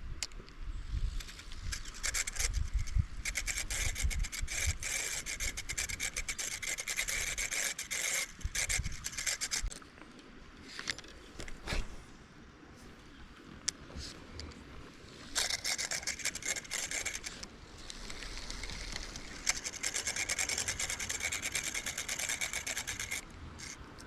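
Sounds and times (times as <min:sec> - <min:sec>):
fishing reel grinding: 0:01.2 - 0:09.7, 0:15.3 - 0:23.8.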